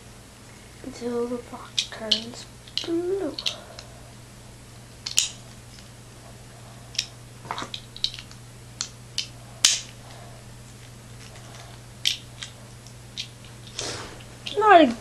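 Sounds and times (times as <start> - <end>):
plastic toy parts clicking: 1.8 - 3.6, 5.0 - 5.4, 6.9 - 10.0.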